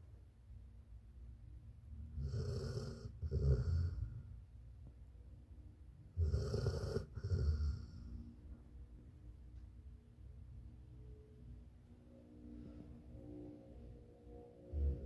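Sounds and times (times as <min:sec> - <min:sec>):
dog snoring: 0:02.1 - 0:04.3, 0:06.2 - 0:08.1.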